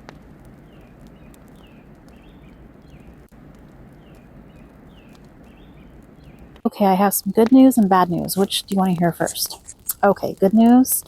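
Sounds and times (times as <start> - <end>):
low outdoor background: 0.0 - 11.0
high falling animal chirps: 7.8 - 10.6.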